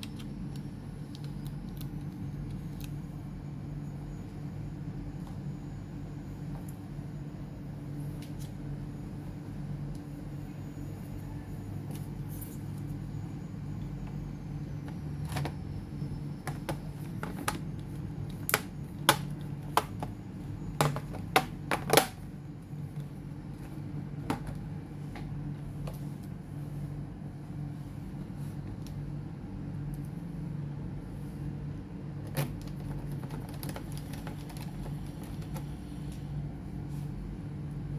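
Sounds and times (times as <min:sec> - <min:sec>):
steady low hum: 0:00.0 - 0:37.9
laptop parts clicking: 0:16.4 - 0:22.2, 0:32.3 - 0:35.7.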